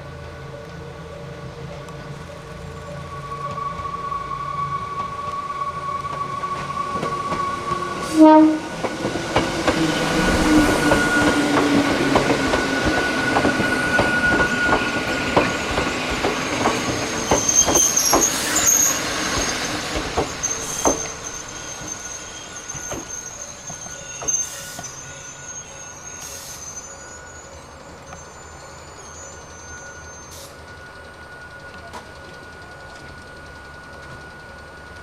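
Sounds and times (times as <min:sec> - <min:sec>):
high wheel squeal: 0:02.5 - 0:35.0
train wheels clacking over rail joints: 0:10.6 - 0:21.2.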